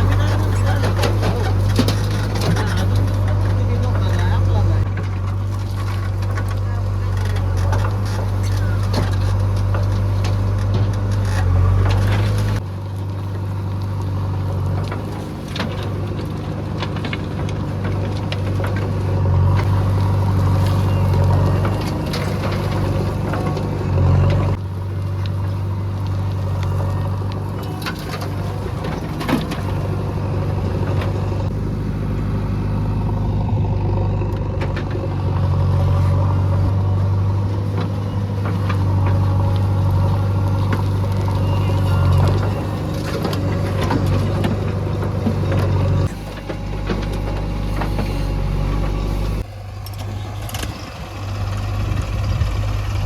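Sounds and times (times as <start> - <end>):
knocks and clatter: 0.0 - 12.6
heavy diesel engine running: 0.0 - 53.0.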